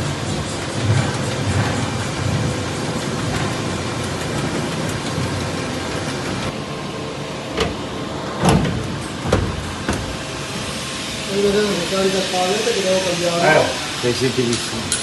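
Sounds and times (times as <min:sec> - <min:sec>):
machine hissing: 0:00.0 - 0:06.6, 0:07.7 - 0:15.0
machine mechanism clunks: 0:07.5 - 0:10.3.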